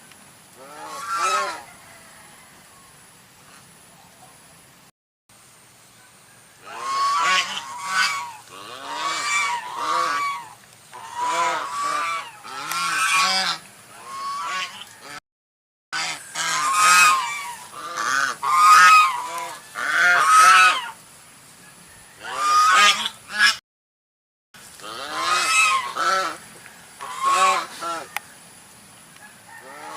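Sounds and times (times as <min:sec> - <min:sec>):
goose honking: 0:00.6 - 0:01.7, 0:06.6 - 0:15.2, 0:16.0 - 0:21.0, 0:22.2 - 0:23.6, 0:24.8 - 0:26.4, 0:27.0 - 0:28.2, 0:29.5 - 0:29.9.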